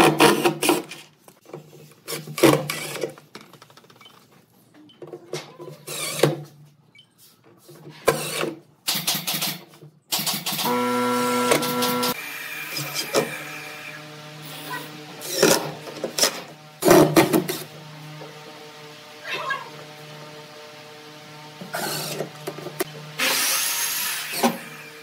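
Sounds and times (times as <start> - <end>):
power tool running: 10.3 - 25.0
motor whine: 10.7 - 12.2.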